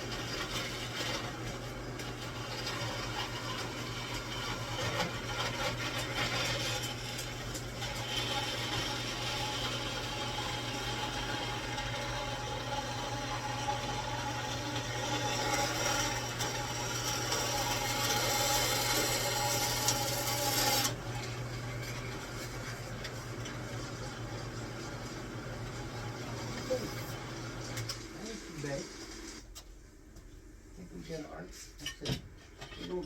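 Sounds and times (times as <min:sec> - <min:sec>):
grinding mechanical noise: 0:00.0 - 0:29.5
machine tool motor hum: 0:02.3 - 0:21.3.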